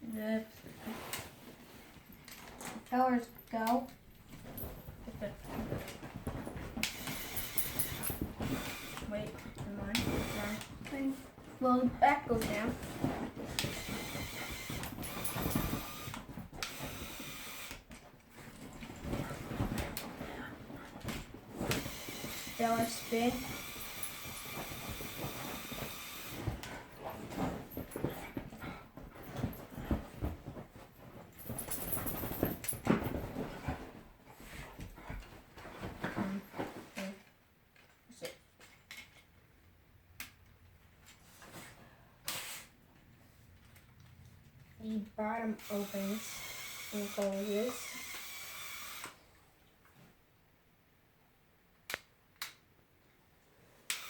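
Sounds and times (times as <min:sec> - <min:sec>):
small electric motor whirring: 0:06.9 - 0:09.0, 0:10.0 - 0:10.7, 0:13.7 - 0:17.8, 0:21.8 - 0:26.4, 0:45.6 - 0:49.2.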